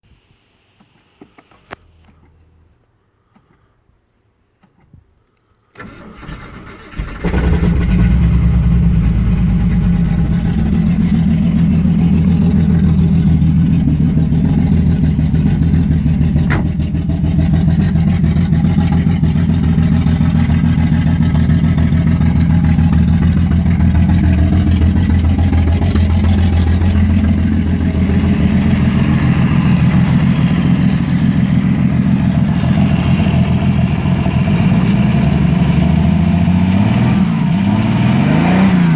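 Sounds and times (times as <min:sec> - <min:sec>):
starter motor cranking: 0:05.8 - 0:19.6
car engine running roughly: 0:06.9 - 0:36.7.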